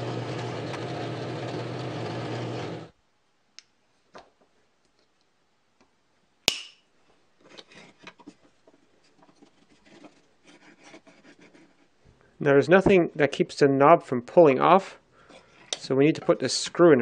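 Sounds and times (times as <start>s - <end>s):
machine running: 0.0s - 2.9s
soft rubbing and scraping: 7.0s - 12.2s, 15.2s - 17.0s.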